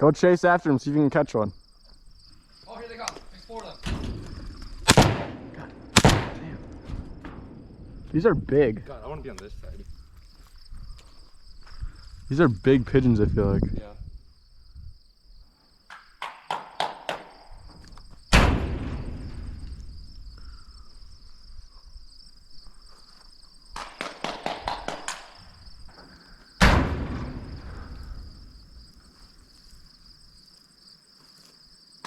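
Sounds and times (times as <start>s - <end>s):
crickets buzzing: 0.0s - 32.0s
echoing shotgun shots: 4.8s - 7.6s, 18.3s - 19.8s, 23.8s - 25.4s, 26.6s - 28.5s.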